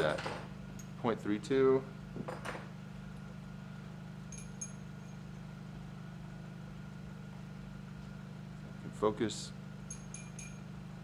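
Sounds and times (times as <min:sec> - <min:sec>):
low mechanical hum: 0:00.0 - 0:11.0
light metal clinks: 0:04.3 - 0:04.9, 0:09.8 - 0:10.7.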